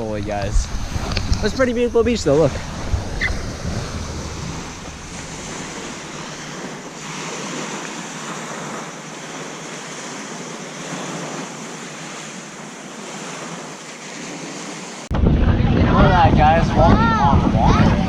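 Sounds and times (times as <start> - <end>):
waves washing onto beach: 0.0 - 18.0.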